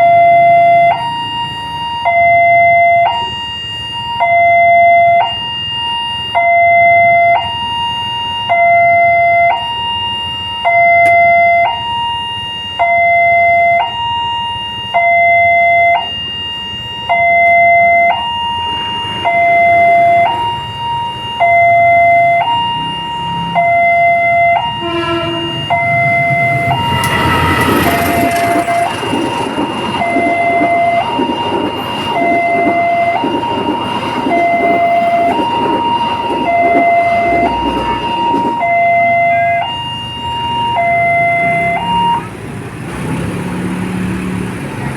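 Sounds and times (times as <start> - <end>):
level crossing two-tone alarm: 0.0 - 42.3
train rumble: 24.6 - 43.1.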